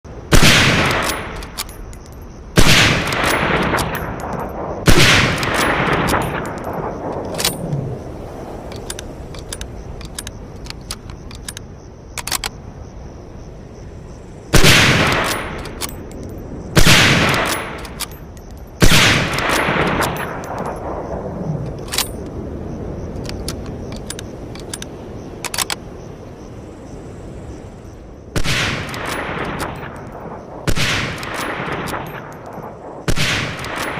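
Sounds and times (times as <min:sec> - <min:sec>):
rifle shots with rolling echo: 0:00.3 - 0:01.6, 0:02.6 - 0:07.6, 0:14.5 - 0:16.0, 0:16.8 - 0:18.2, 0:18.8 - 0:22.2, 0:28.4 - 0:33.9
faint clicks: 0:08.6 - 0:12.6, 0:23.2 - 0:25.8.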